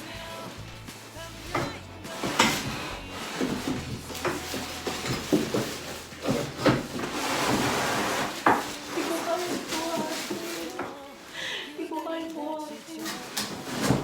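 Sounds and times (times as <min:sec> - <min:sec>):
packaging rustling: 0:01.4 - 0:11.4, 0:12.2 - 0:14.0
knocks and clatters of packaging: 0:01.5 - 0:11.0, 0:13.0 - 0:14.0.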